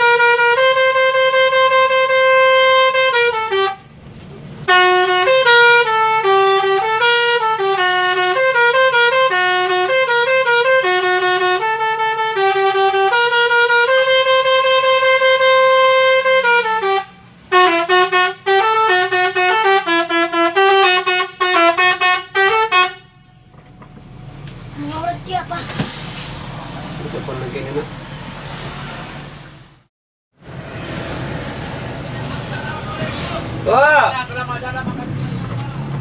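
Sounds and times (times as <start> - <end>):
musical vehicle horn melody: 0.0 - 3.9, 4.6 - 24.4.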